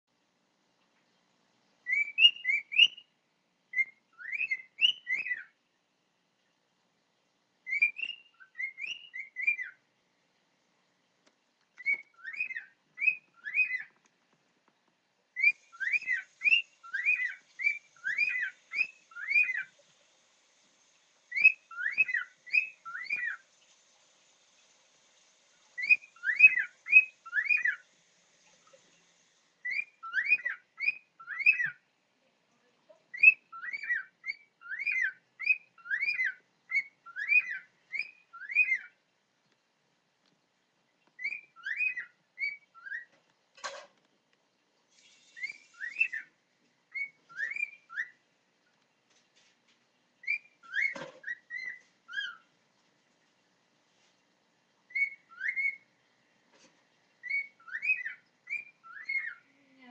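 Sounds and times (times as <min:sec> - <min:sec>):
cockatiel whistling: 0:01.9 - 0:03.0, 0:03.7 - 0:05.5, 0:07.7 - 0:09.8, 0:11.8 - 0:13.9, 0:15.4 - 0:19.7, 0:21.3 - 0:23.4, 0:25.8 - 0:27.8, 0:29.6 - 0:31.8, 0:33.1 - 0:38.9, 0:41.2 - 0:43.1, 0:45.3 - 0:46.3, 0:46.9 - 0:48.2, 0:50.2 - 0:52.4, 0:54.9 - 0:55.8, 0:57.2 - 0:59.4.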